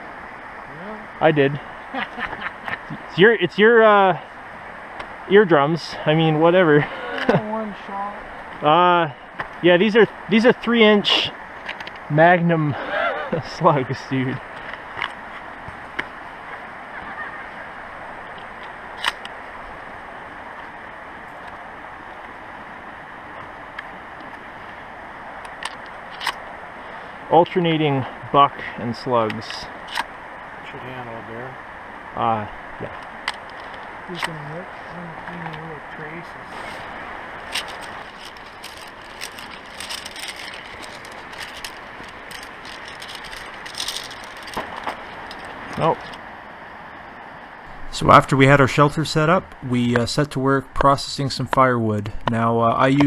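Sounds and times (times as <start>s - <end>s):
flowing water: 0.0s - 51.7s
steady background hiss: 0.0s - 53.0s
hard gear clicking and rattling: 36.6s - 46.2s.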